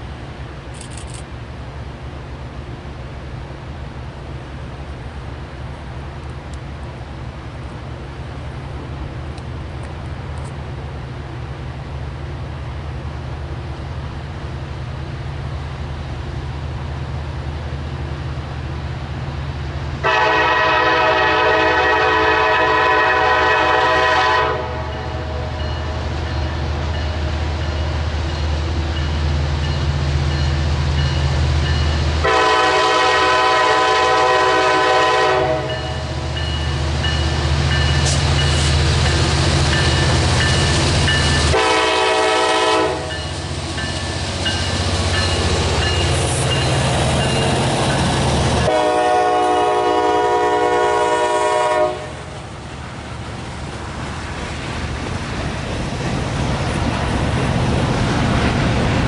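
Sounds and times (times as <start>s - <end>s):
locomotive engine drone: 0.0s - 59.0s
locomotive horn blasts: 20.0s - 25.6s, 32.2s - 36.2s, 41.5s - 43.3s, 48.6s - 52.3s.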